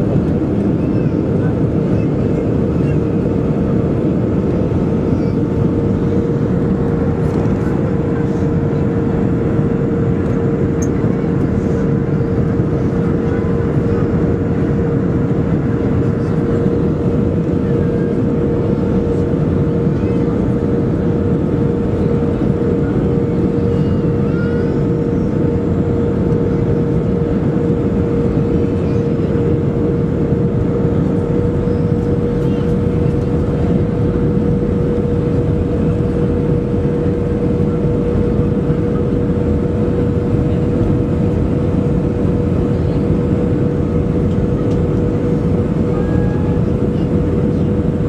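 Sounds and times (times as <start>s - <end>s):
airplane cabin airflow and engine noise: 0.0s - 48.0s
constant humming tone: 0.0s - 48.0s.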